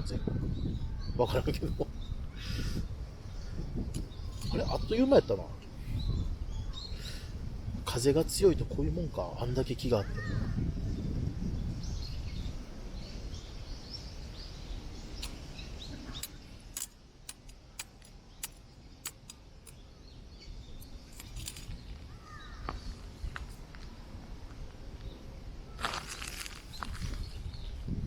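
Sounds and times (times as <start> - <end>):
wind buffeting microphone: 0.0 - 17.4, 19.7 - 28.0
small birds chirping: 0.0 - 23.7, 24.8 - 28.0
sharp little clicks: 16.2 - 19.8.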